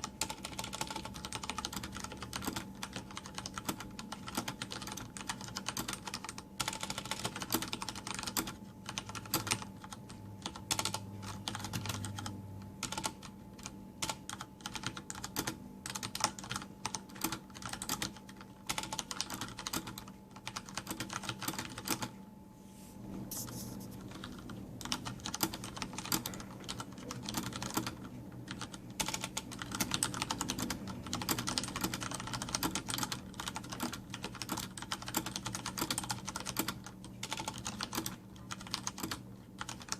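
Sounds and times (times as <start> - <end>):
mechanical keyboard typing: 0.0 - 22.2, 24.0 - 39.9.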